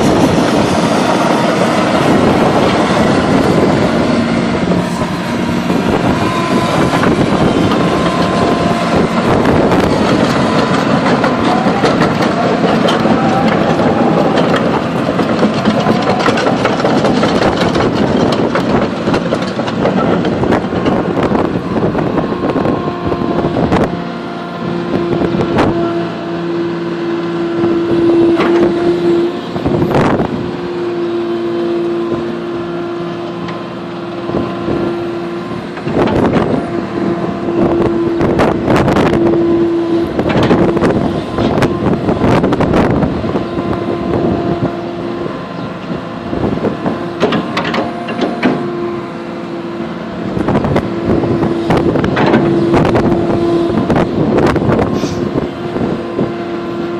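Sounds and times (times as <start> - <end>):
excavator engine and hydraulics: 0.0 - 56.9
steady whine: 0.0 - 56.9.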